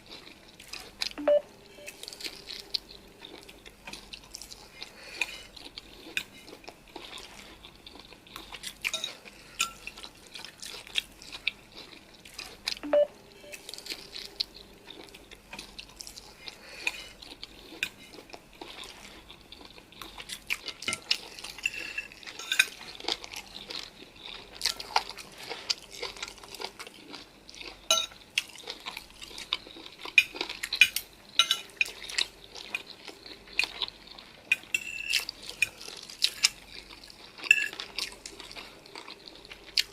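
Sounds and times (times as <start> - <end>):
chewing: 0.0 - 39.9
cutlery clinking on dishes: 8.9 - 9.9, 20.8 - 22.8, 27.9 - 28.2, 30.2 - 32.0, 34.5 - 35.3, 37.5 - 37.8.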